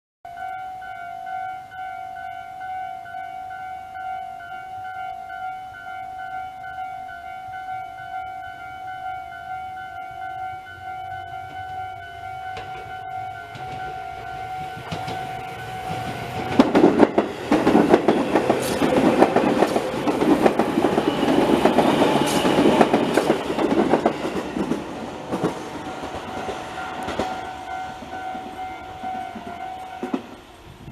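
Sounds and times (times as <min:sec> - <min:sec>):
level crossing warning bell: 0:00.3 - 0:25.1, 0:25.7 - 0:30.5
electric train passing: 0:00.3 - 0:30.9
wheel and rail clicks: 0:13.5 - 0:30.4.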